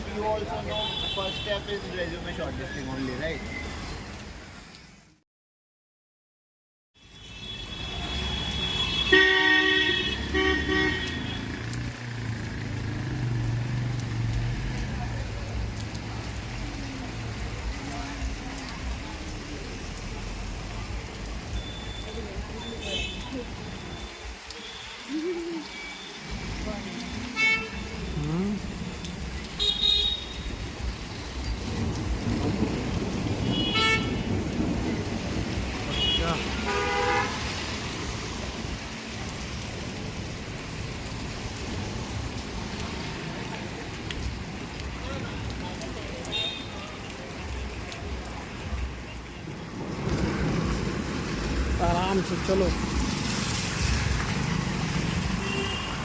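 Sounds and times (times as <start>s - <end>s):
road traffic noise: 0.0s - 5.2s, 7.0s - 56.0s
steady rain: 0.0s - 5.2s, 7.0s - 56.0s
vehicle horn honking: 7.2s - 11.4s, 33.5s - 34.2s, 35.9s - 37.4s.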